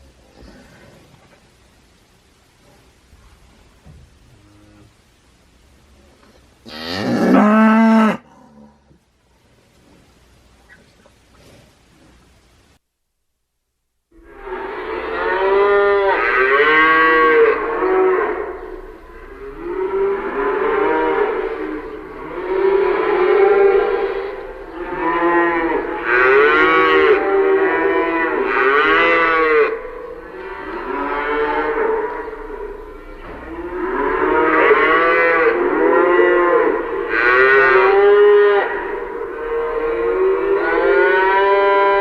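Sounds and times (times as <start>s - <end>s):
cows mooing: 6.7s - 8.9s, 14.2s - 42.0s.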